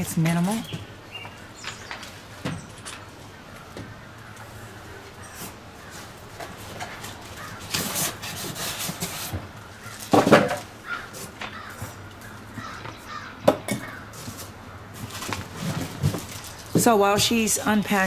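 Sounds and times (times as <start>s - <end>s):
packaging rustling and scraping: 4.4s - 13.1s, 13.8s - 17.6s.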